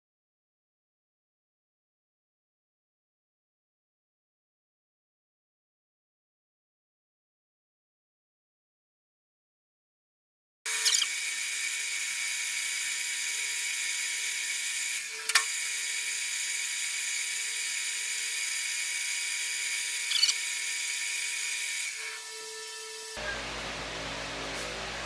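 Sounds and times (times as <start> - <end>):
metalworking machine whining: 10.7 - 25.0.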